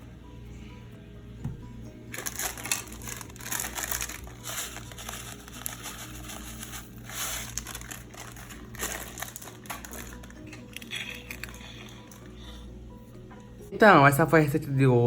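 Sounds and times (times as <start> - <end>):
crinkling and rustling: 2.1 - 12.3.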